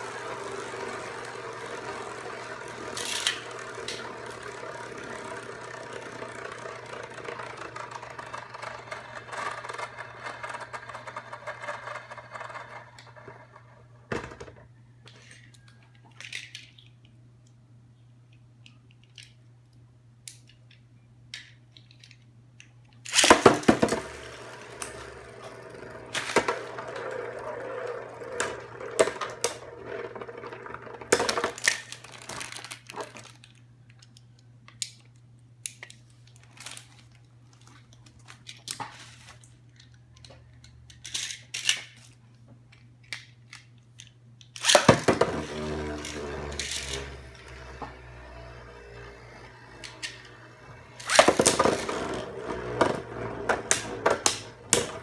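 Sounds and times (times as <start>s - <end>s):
plastic packaging crackling and tearing: 31.6s - 33.4s.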